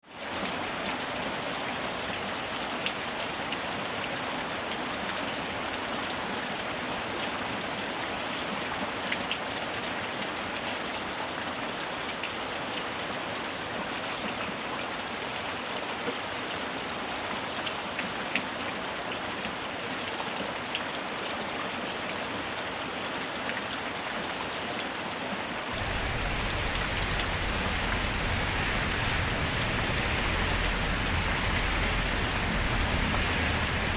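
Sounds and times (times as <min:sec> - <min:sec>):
steady rain falling: 0:25.7 - 0:33.9
deep low rumble: 0:25.8 - 0:33.9.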